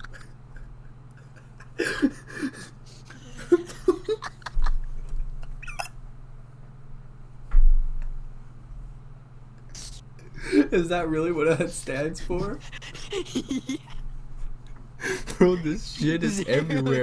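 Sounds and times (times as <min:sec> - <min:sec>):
bursts of laughter: 0:00.0 - 0:05.9, 0:11.5 - 0:14.1, 0:15.0 - 0:17.0
steady low hum: 0:00.0 - 0:17.0.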